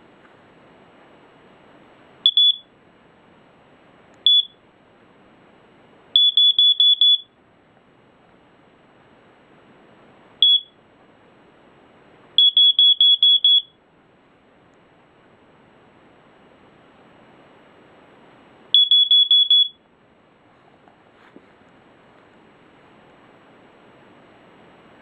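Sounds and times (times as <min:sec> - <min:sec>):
smoke alarm beeps: 0:02.2 - 0:02.7, 0:04.2 - 0:04.6, 0:06.2 - 0:07.4, 0:10.4 - 0:10.8, 0:12.4 - 0:13.8, 0:18.7 - 0:19.8.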